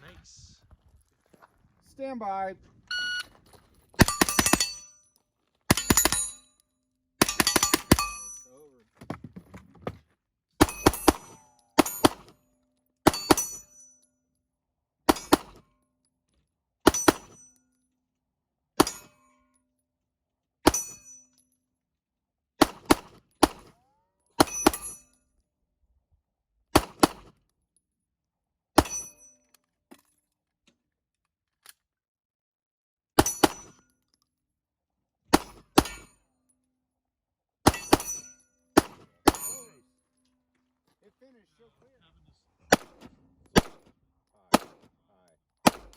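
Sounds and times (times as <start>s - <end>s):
rifle shots: 4.0s - 4.8s, 22.6s - 23.8s, 26.8s - 27.3s, 42.7s - 43.9s, 44.5s - 44.9s, 45.6s - 45.9s.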